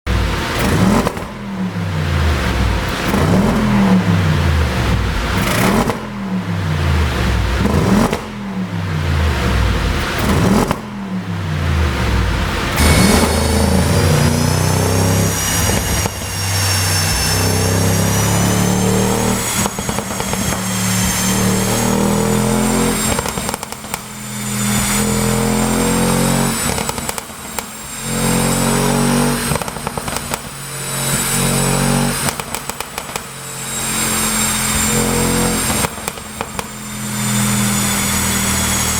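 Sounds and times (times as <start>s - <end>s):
exhaust crackles and pops: 0.1s - 8.4s, 9.5s - 11.0s, 19.4s - 21.3s, 22.0s - 24.2s, 26.4s - 27.9s, 28.9s - 31.3s, 31.9s - 33.4s, 35.5s - 36.9s
car engine revving: 0.1s - 38.9s.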